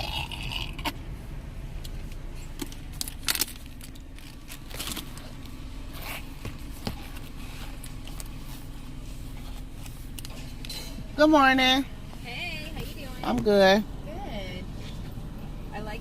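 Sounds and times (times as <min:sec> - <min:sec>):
rustling and scraping: 0:01.9 - 0:11.2, 0:14.7 - 0:15.2.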